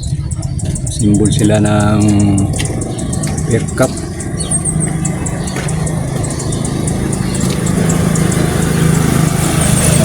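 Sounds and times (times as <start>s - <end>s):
engine droning: 0.0s - 10.0s
faint high ticks: 0.6s - 8.6s.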